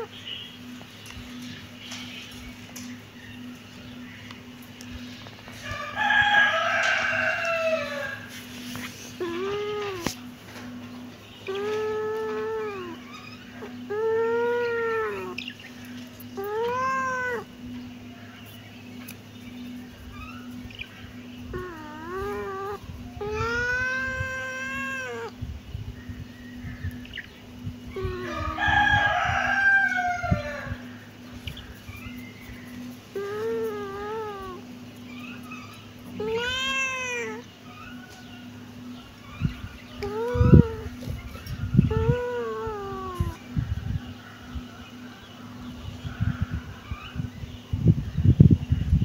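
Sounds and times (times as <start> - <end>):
faint steady hum: 0.0 - 49.0
kitten meowing: 9.2 - 10.2, 11.5 - 15.4, 16.4 - 17.5, 21.5 - 25.4, 33.2 - 34.6, 36.1 - 37.4, 40.0 - 41.0, 41.9 - 43.4.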